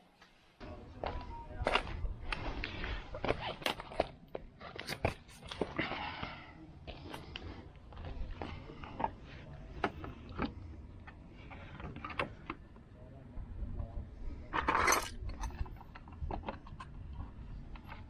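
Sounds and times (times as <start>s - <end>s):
screws and hand tools clinking: 14.6s - 16.9s.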